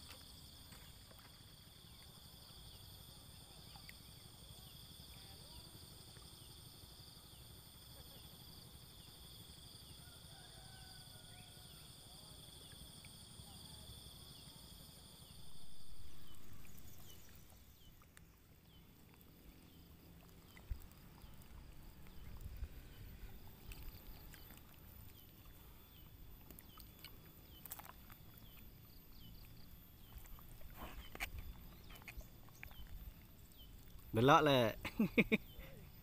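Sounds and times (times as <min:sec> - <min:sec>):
low rumble of wind or water: 0:00.0 - 0:36.0.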